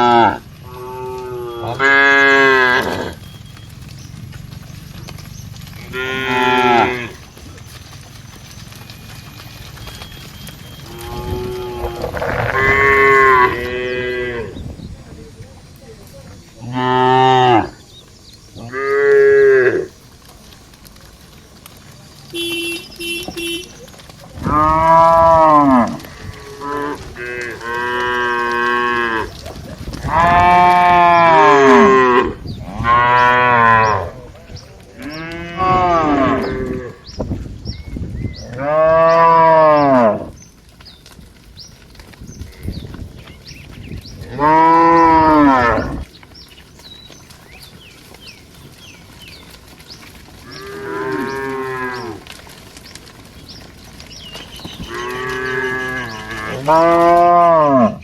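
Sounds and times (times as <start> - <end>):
cows mooing: 0.0 - 14.6, 16.6 - 17.8, 18.6 - 19.9, 24.4 - 37.2, 38.4 - 40.4, 44.2 - 46.2, 50.4 - 52.6, 54.4 - 58.0.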